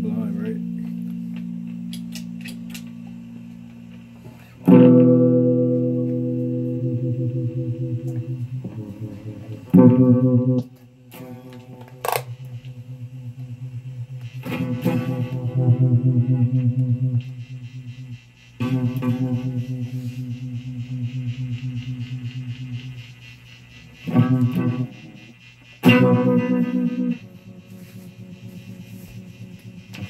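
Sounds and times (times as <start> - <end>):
distorted electric guitar chords: 0.0 - 30.0.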